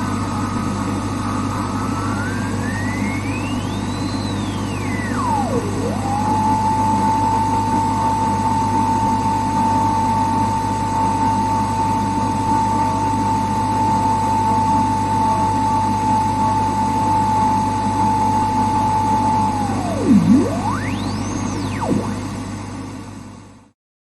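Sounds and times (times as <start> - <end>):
low hum: 0.0 - 8.6, 18.1 - 22.9
steady whistling tone: 0.3 - 7.8, 18.0 - 22.4.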